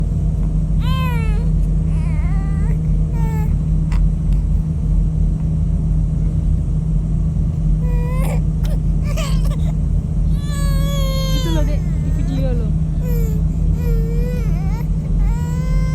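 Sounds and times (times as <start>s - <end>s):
baby crying: 0.8s - 4.5s, 7.8s - 12.4s, 13.0s - 15.9s.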